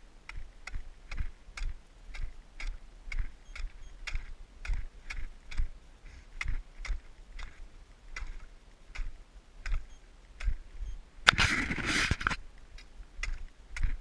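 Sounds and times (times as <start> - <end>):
footsteps crunching on snow: 11.3 - 12.4
loud rushing scrape: 11.3 - 12.4.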